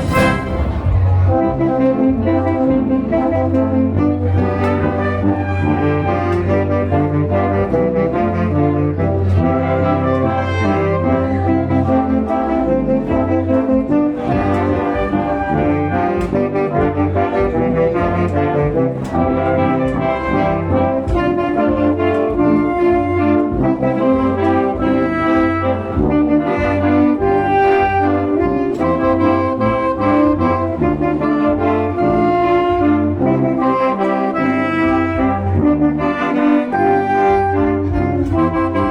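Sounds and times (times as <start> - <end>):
drum strikes: 0.0 - 2.2
brass band playing: 0.0 - 38.9.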